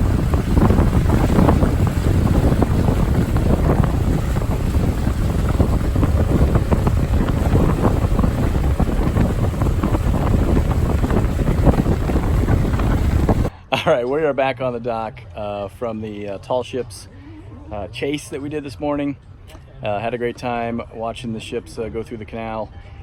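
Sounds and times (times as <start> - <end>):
motorboat running: 0.0 - 13.5
wind buffeting microphone: 0.0 - 13.5.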